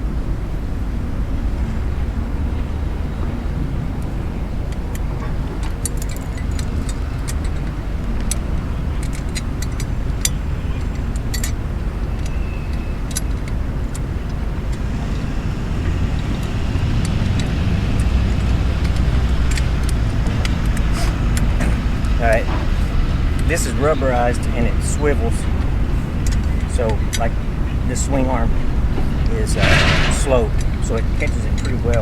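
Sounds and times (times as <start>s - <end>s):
road traffic rumble: 0.0s - 32.0s
metal stand clicking and rattling: 4.0s - 22.7s, 29.2s - 32.0s.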